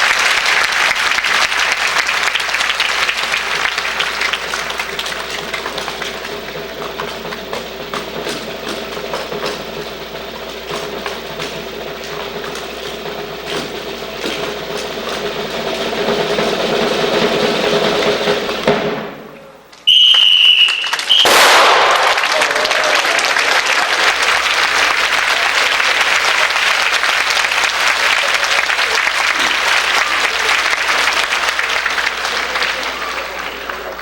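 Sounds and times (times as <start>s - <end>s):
audience applauding: 0.0s - 18.7s, 19.9s - 34.0s
steady droning sound: 0.4s - 18.7s.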